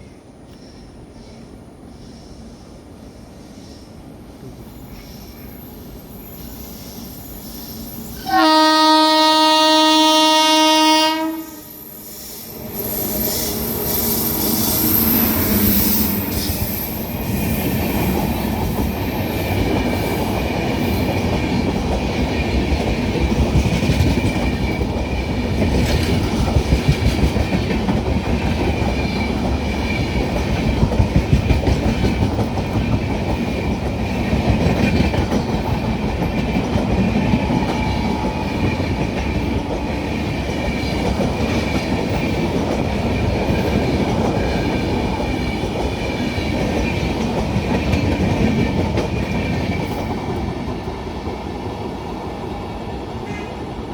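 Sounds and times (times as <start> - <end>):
train rolling past rumble: 0.0 - 53.9
locomotive horn blast: 8.2 - 11.8.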